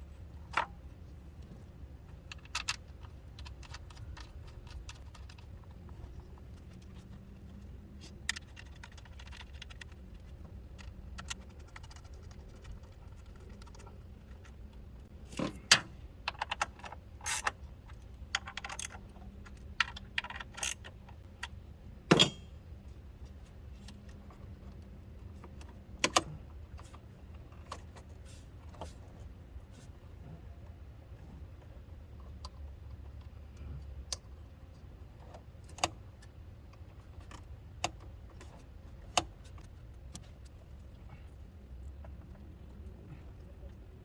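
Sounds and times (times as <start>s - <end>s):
metal tools clicking and clinking: 18.4s - 21.0s, 22.1s - 22.6s.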